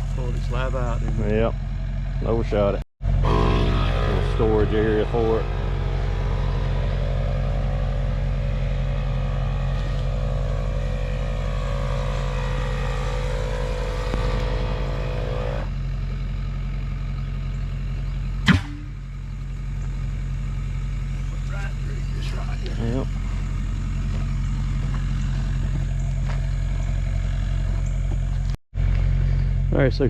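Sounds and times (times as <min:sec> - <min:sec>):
engine running: 0:00.0 - 0:30.0
high even whine: 0:03.0 - 0:17.5, 0:18.2 - 0:30.0
sharp metal clank: 0:18.4 - 0:19.1.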